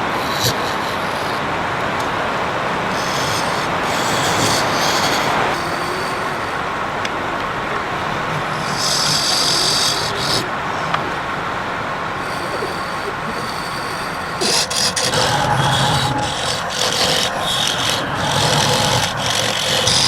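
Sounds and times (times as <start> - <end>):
turning tool scraping wood: 12.3 - 20.0
wood lathe running: 14.0 - 20.0.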